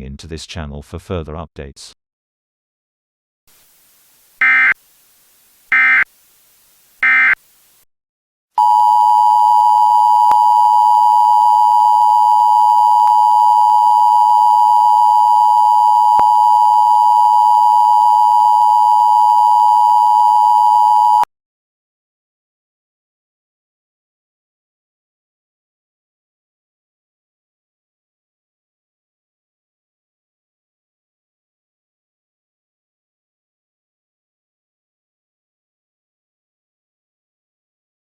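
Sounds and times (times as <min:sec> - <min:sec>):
two-tone attention signal: 0:04.4 - 0:04.8, 0:05.7 - 0:06.1, 0:07.0 - 0:07.4
loud digital data bursts: 0:07.0 - 0:07.4.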